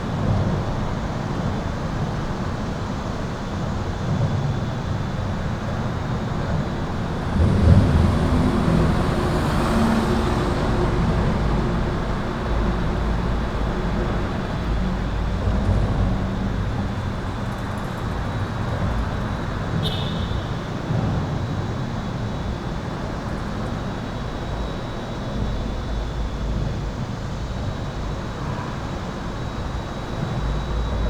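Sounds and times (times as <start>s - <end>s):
highway traffic roar: 0.0s - 31.0s
vehicle passing: 6.5s - 19.8s.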